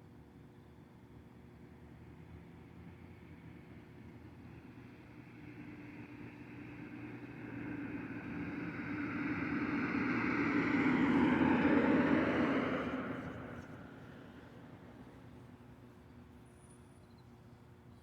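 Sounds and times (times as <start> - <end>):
car approaching on road: 6.5 - 15.6.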